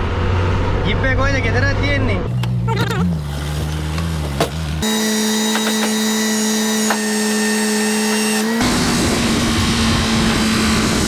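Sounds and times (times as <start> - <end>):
power tool motor running: 4.8 - 11.0.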